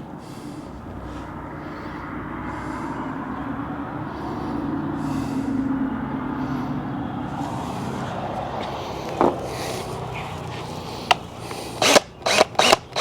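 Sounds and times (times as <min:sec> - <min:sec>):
power drill drilling into steel: 0:11.0 - 0:13.0.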